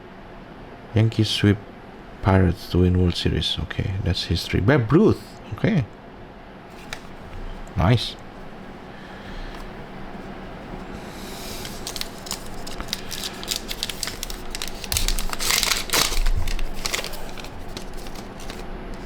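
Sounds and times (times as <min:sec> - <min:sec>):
plastic wrapper crinkling and tearing: 0:06.7 - 0:07.7, 0:09.6 - 0:19.0.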